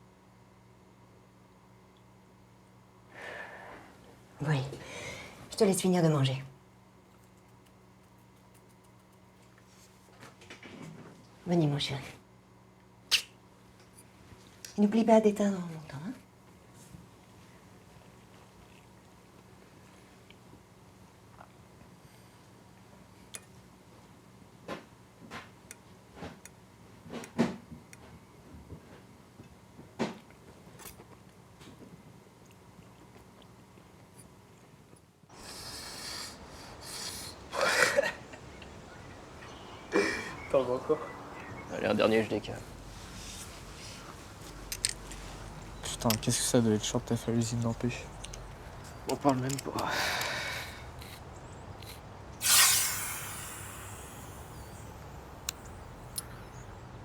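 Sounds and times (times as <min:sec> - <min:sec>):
even background hiss: 0:35.3 - 0:57.0
sharp exhale or sniff: 0:35.4 - 0:38.0, 0:49.8 - 0:51.2, 0:51.8 - 0:56.7
sharp click: 0:51.8 - 0:56.7.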